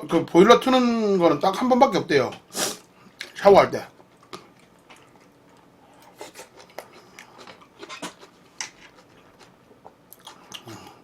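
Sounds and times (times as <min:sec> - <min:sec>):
person chewing food: 0:04.0 - 0:11.0.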